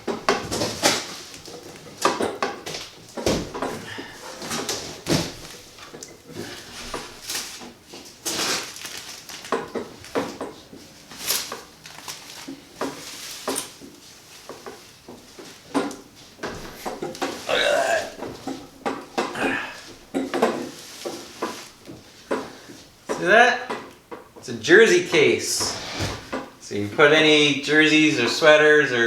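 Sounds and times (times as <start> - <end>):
knocks and clatters: 0.0 - 8.1, 12.4 - 24.4
packaging rustling and crinkling: 4.3 - 15.7.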